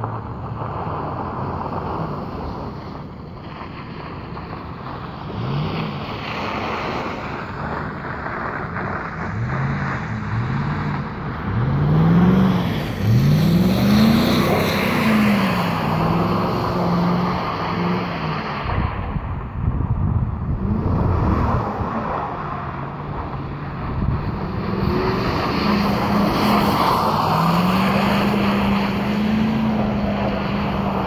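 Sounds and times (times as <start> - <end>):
constant rushing noise: 0.0 - 31.0
vehicle engine revving: 7.6 - 18.7, 20.3 - 31.0.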